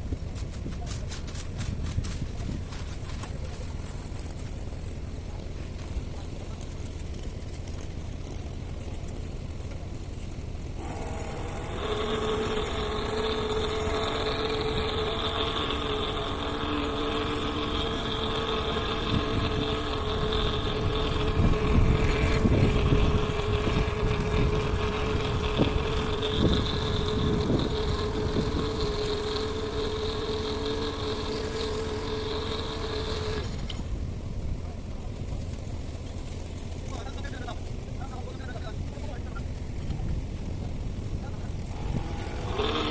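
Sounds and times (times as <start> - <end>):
engine humming steadily: 0.0 - 42.9.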